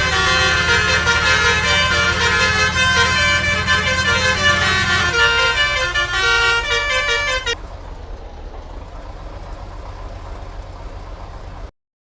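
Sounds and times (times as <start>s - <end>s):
musical bus air horn: 0.0s - 7.6s.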